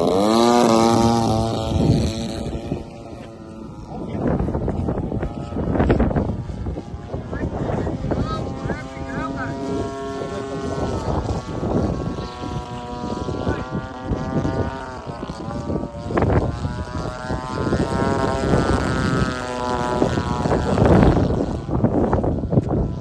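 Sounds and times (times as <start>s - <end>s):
model plane engine buzzing: 0.0s - 23.0s.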